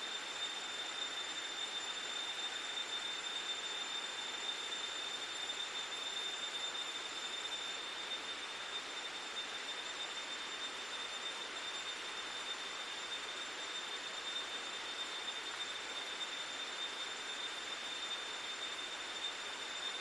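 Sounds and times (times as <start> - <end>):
insects droning: 0.0 - 20.0.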